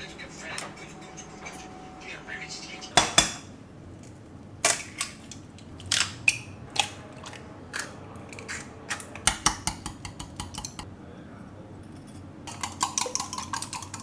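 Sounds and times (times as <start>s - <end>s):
dishes and utensils clinking: 2.8s - 3.5s, 6.3s - 10.9s, 11.8s - 14.0s.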